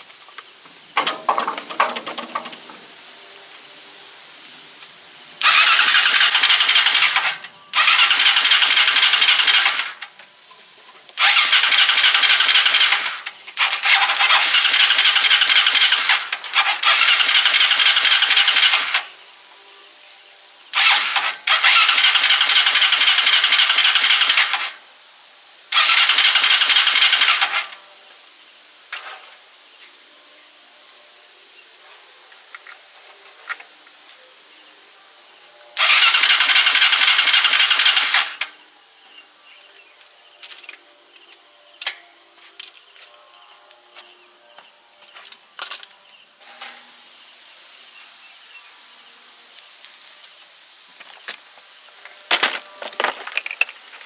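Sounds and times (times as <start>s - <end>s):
engine cranking by starter: 1.0s - 3.0s, 5.4s - 10.2s, 11.1s - 19.2s, 20.7s - 24.8s, 25.7s - 27.8s, 35.8s - 38.6s.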